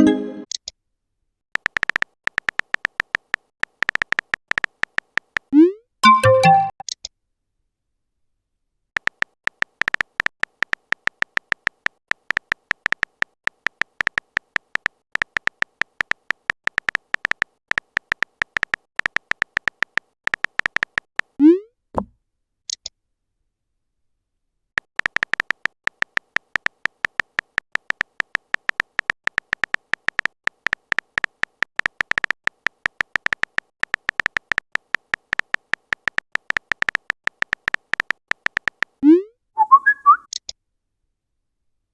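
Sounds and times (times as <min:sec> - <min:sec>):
typing clicks: 0:01.6 - 0:07.1, 0:09.0 - 0:21.4, 0:24.8 - 0:39.0
rising bloop: 0:39.0 - 0:40.2.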